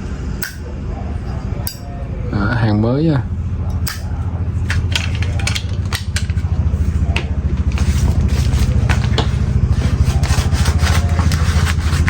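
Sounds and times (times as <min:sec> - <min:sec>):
low pulsing engine-like rumble: 0:00.0 - 0:12.0
packaging being handled: 0:07.6 - 0:12.0.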